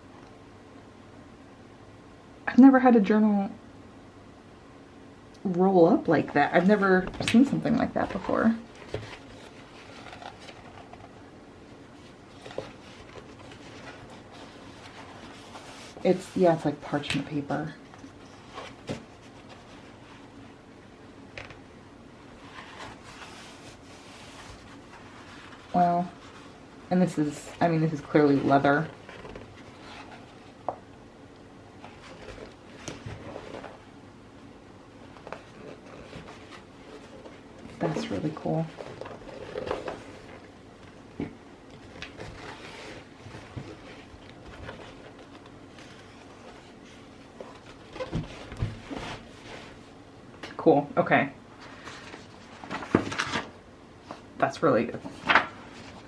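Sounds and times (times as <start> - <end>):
soft paper rustling: 6.4 - 20.4, 22.2 - 30.9, 31.8 - 33.9, 35.0 - 41.1, 41.7 - 50.0, 51.6 - 56.0.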